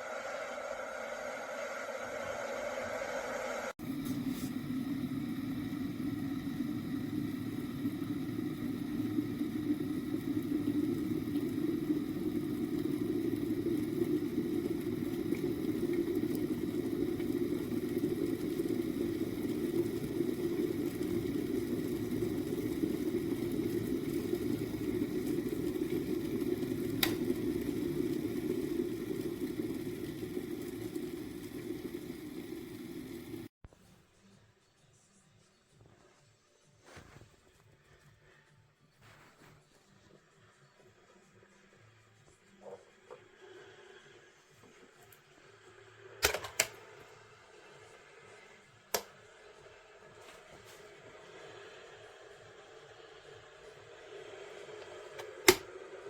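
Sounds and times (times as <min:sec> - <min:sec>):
kettle water boiling: 0:03.6 - 0:33.5, 0:42.2 - 0:56.0
kettle switch click: 0:46.2 - 0:46.8, 0:48.9 - 0:49.1, 0:55.2 - 0:55.7.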